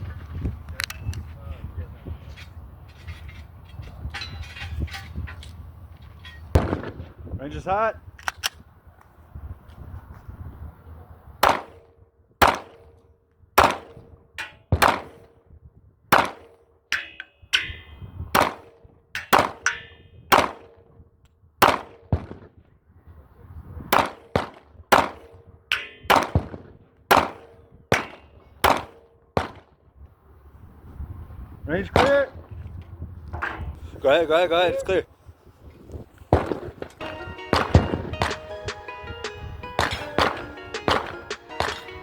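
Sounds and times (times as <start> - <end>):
pistol single shots: 6.5 - 7.2, 11.4 - 13.0, 13.6 - 14.1, 14.7 - 15.3, 16.1 - 16.6, 18.3 - 20.8, 21.6 - 22.5, 23.9 - 25.4, 26.0 - 29.7, 36.3 - 38.5, 39.8 - 42.0.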